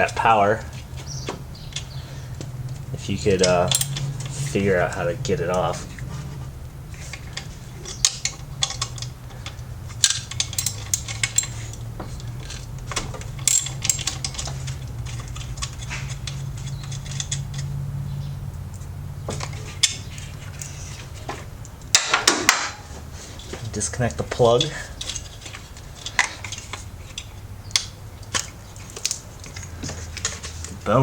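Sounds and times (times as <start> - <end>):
steady low hum: 0.0 - 31.0
wrench clinking on metal: 3.0 - 5.7, 7.1 - 17.7.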